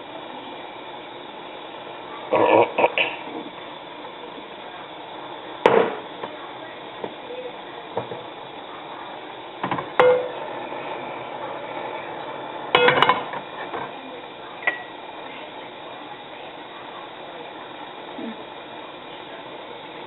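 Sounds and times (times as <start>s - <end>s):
utensils and dishes clinking: 9.7s - 10.4s.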